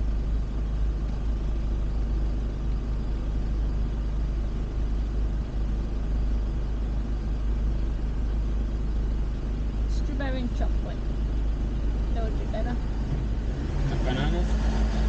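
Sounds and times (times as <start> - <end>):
van engine rumble: 0.0 - 15.0
road noise: 9.9 - 15.0.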